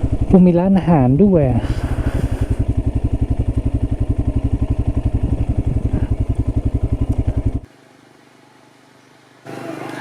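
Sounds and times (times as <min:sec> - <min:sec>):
motorcycle engine idling: 0:00.0 - 0:07.7.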